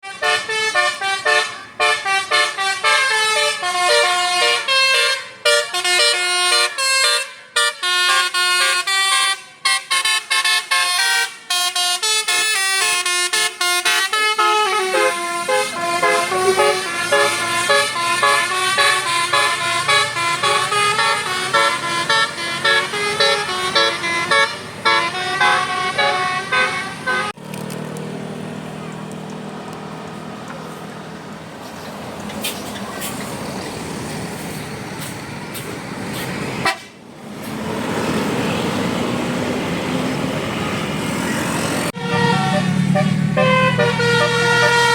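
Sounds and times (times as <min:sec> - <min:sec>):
musical bus horn tune: 0:00.0 - 0:27.4, 0:36.6 - 0:37.0, 0:41.9 - 0:44.9.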